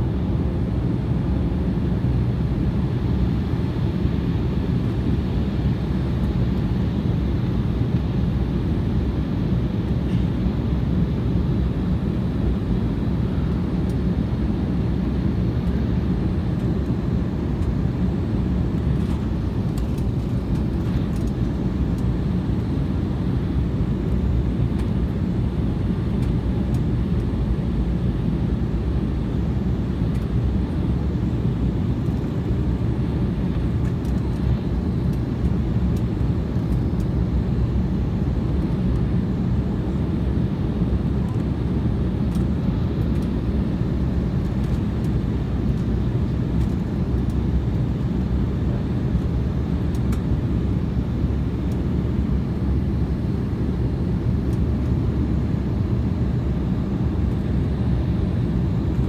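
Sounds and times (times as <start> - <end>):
airliner engines droning: 0.0 - 59.0.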